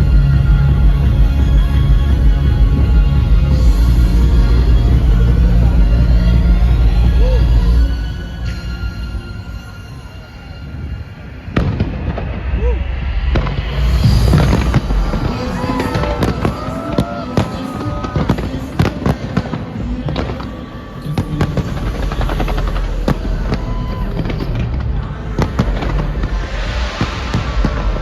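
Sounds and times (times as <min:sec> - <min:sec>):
loud soundtrack music: 0:00.0 - 0:28.0
fireworks bangs and crackles: 0:10.8 - 0:28.0.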